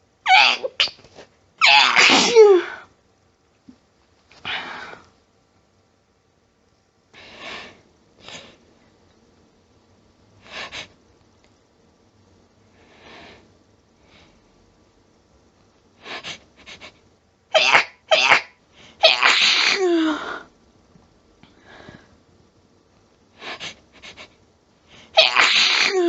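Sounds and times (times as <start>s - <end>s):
person sneezing: 0.3s - 2.9s, 17.6s - 20.4s, 25.2s - 26.0s.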